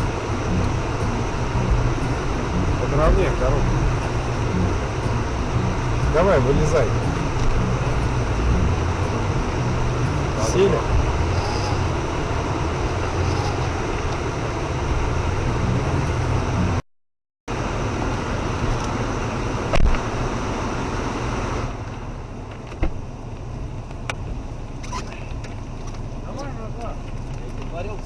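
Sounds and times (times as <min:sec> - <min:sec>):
car engine running: 0:00.0 - 0:16.8, 0:17.5 - 0:28.0
steady rushing noise: 0:00.0 - 0:16.8.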